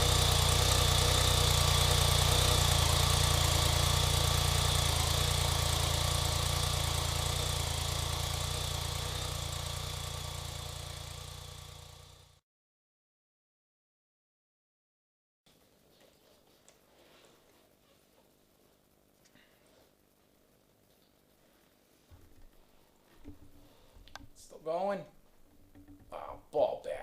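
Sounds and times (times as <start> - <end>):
motorcycle engine idling: 0.0 - 12.4.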